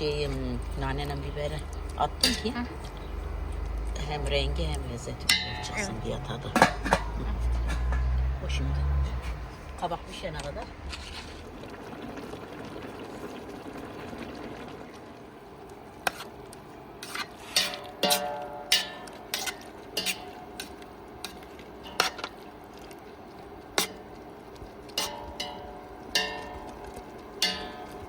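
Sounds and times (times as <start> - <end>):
spoon clinking against pot: 17.6 - 20.8.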